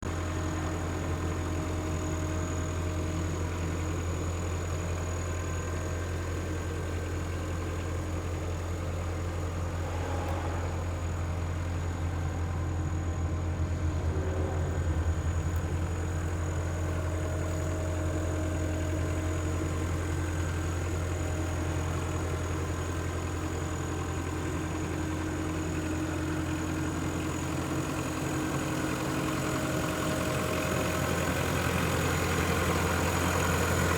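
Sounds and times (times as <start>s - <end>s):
diesel engine idling: 0.0s - 33.9s
faint high whine: 8.0s - 33.4s.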